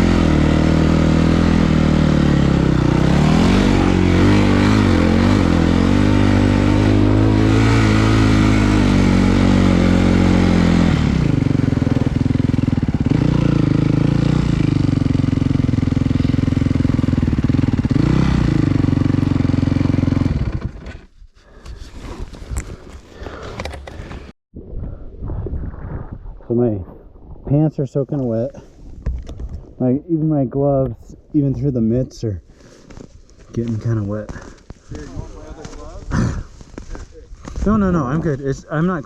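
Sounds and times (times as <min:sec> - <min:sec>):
snow vehicle engine under load: 0:00.0 - 0:24.3, 0:32.6 - 0:39.0.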